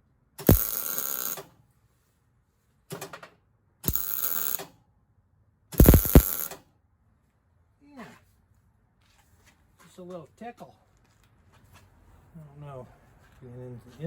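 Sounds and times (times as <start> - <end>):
welding arc crackling: 0.4 - 1.4, 3.9 - 4.6, 5.8 - 6.5.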